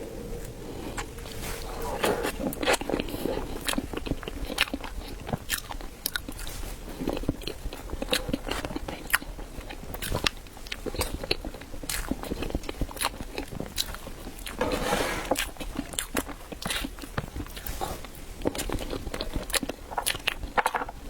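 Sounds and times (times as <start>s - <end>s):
biting and chewing: 0.4s - 14.7s, 15.3s - 21.0s.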